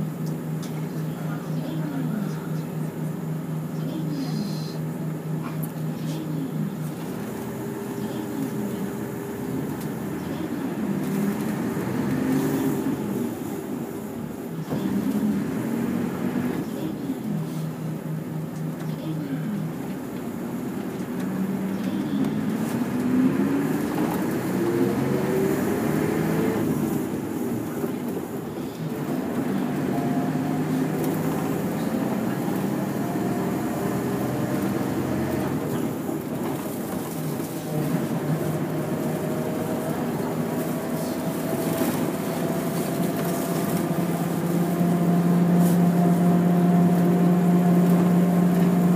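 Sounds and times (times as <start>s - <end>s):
bus engine running: 0.0s - 48.9s
faint engine whine: 0.0s - 48.9s.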